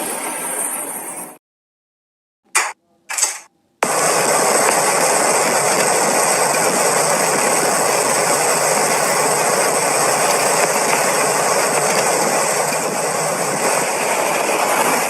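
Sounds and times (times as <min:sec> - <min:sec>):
loud steady rushing noise: 0:03.8 - 0:15.0.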